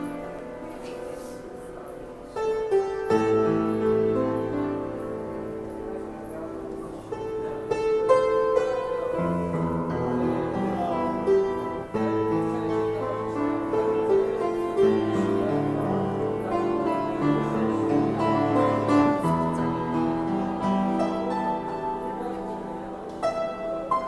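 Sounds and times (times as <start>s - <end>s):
piano-like keyboard melody: 0.0s - 24.0s.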